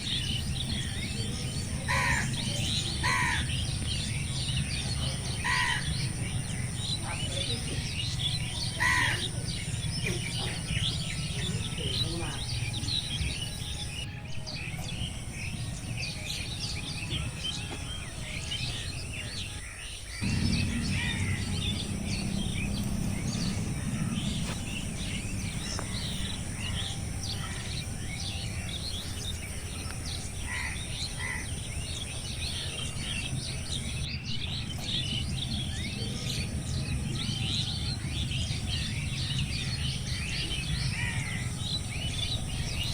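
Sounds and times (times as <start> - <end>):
small birds chirping: 0.0 - 42.9
low wind rumble: 20.2 - 42.9.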